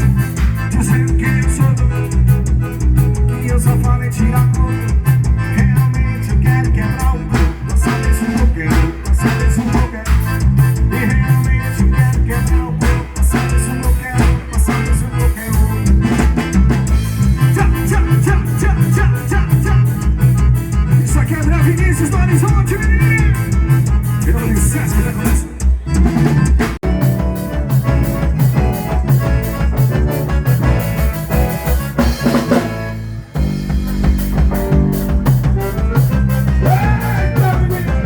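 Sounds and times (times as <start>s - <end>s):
band music through pa: 0.0s - 38.0s
person singing: 0.3s - 16.5s, 17.2s - 20.2s, 35.8s - 38.0s.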